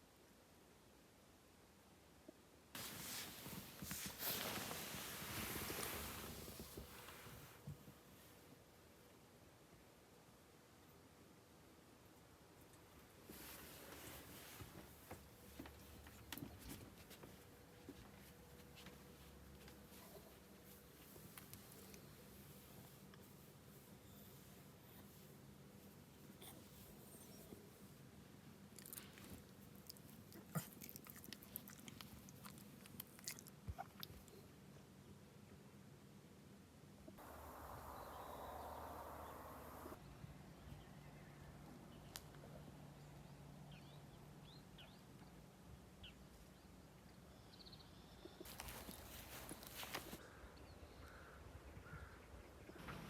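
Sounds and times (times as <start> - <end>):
faint low hum: 0.0 - 53.0
rush of noise: 37.2 - 40.0
faint bird chirps: 37.2 - 42.2.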